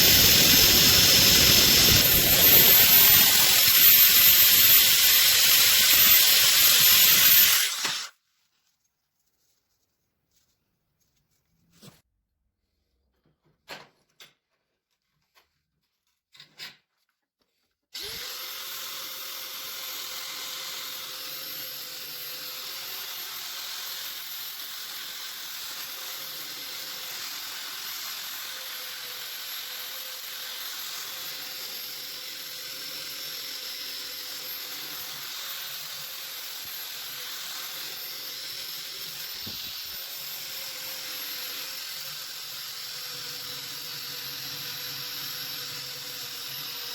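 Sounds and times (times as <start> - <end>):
sanding machine running: 0.0 - 8.1.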